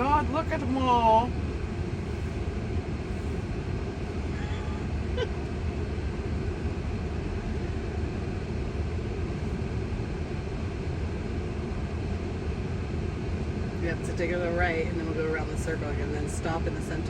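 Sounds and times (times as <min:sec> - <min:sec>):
road and tyre rumble in car: 0:00.0 - 0:17.0.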